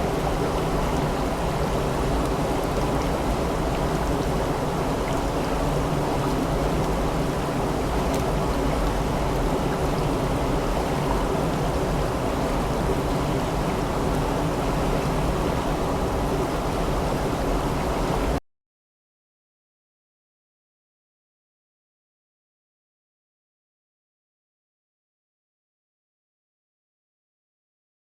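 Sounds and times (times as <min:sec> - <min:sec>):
stream water flowing: 0:00.0 - 0:18.4.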